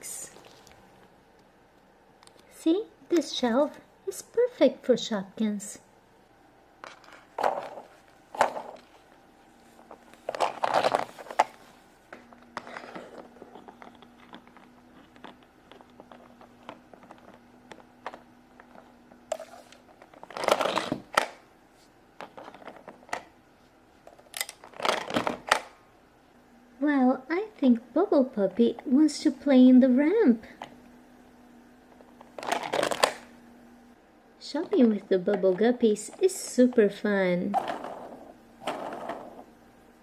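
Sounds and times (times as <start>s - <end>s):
plastic toy pieces rustling: 10.1s - 11.6s, 19.9s - 21.0s, 24.1s - 25.4s, 32.2s - 33.2s.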